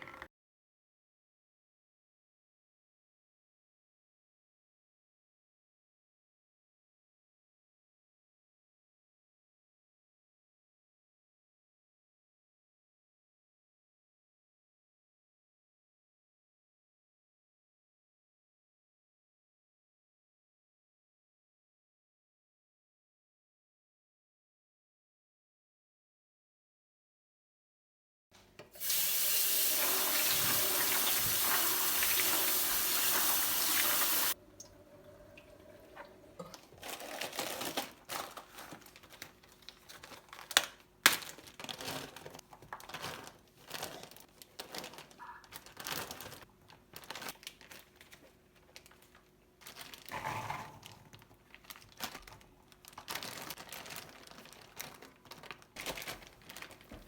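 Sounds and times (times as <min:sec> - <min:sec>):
kitchen tap running: 0:28.8 - 0:36.7.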